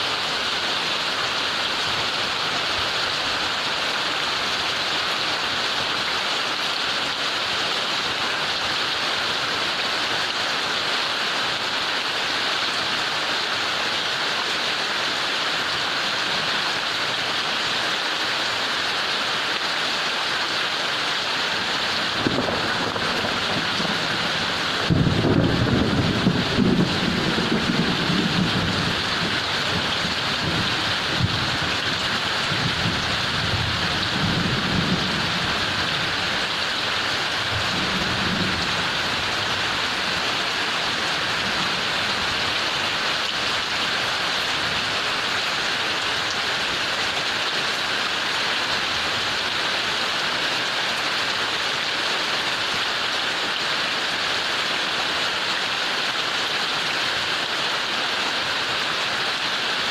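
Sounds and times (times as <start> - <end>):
heavy rain pouring: 0.0 - 59.9
low thunder rumble: 22.1 - 31.8.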